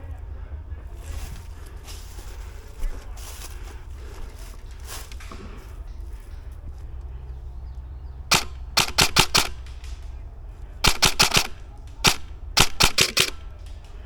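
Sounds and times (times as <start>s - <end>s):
airsoft rifle shots: 8.3s - 14.0s.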